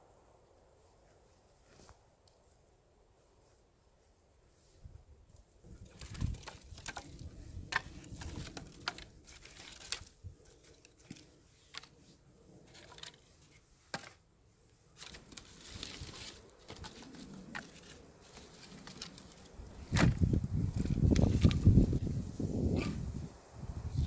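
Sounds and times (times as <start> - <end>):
small clicks and rustling: 5.3 - 14.2, 14.9 - 22.0.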